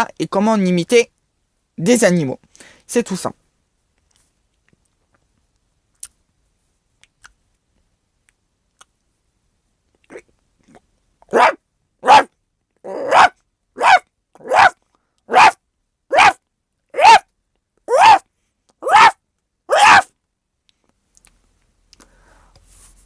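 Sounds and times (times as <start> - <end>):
person imitating dog barks: 10.1 - 17.3, 17.9 - 20.1.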